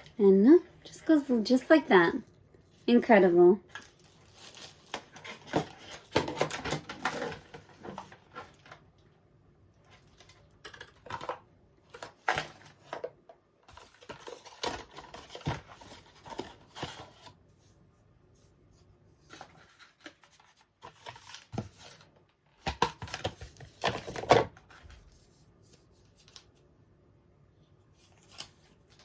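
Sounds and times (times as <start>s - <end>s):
packaging rustling: 3.7s - 8.8s.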